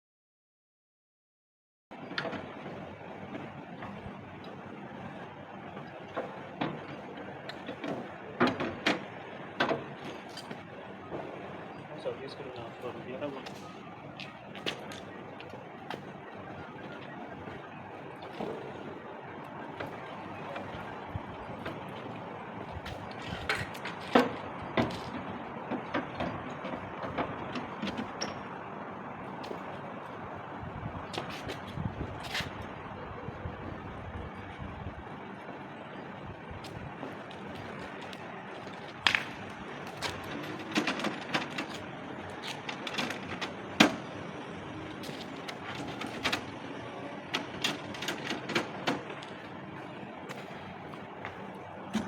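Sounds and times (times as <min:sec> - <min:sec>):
steady background noise: 0:01.9 - 0:52.0
parts knocking and clicking: 0:02.1 - 0:04.6, 0:05.8 - 0:11.4, 0:16.8 - 0:28.6, 0:36.6 - 0:52.0.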